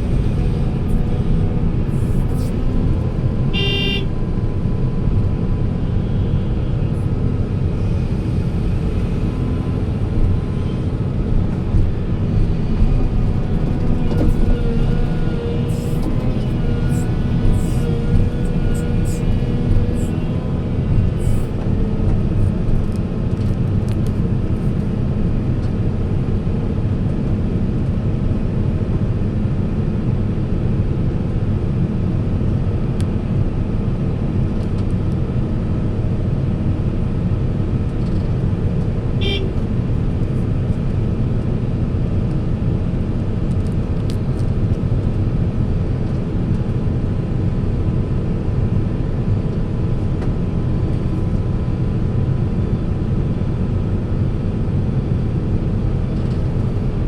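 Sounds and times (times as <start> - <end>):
diesel machinery engine running: 0.0 - 28.6, 31.7 - 57.0.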